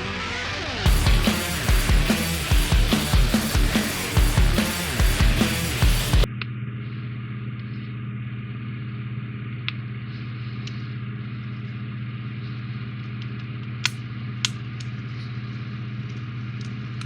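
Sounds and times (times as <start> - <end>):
loud rock music: 0.0 - 6.3
steady low hum: 0.9 - 17.0.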